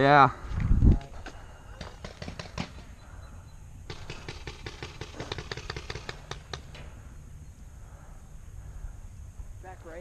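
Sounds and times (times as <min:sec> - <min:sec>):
paintball markers firing: 0:01.8 - 0:02.9, 0:03.9 - 0:06.8.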